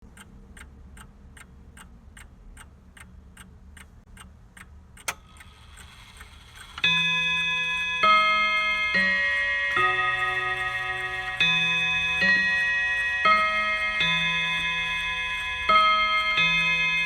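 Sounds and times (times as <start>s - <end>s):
pendulum clock ticking: 0.0s - 17.0s
bell-like clock chime: 6.7s - 17.0s.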